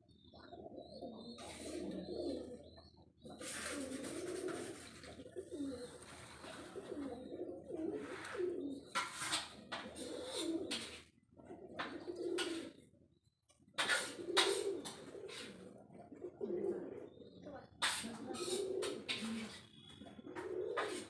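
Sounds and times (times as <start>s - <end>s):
pigeons cooing: 0.0s - 21.0s
rustling noise: 3.4s - 5.3s.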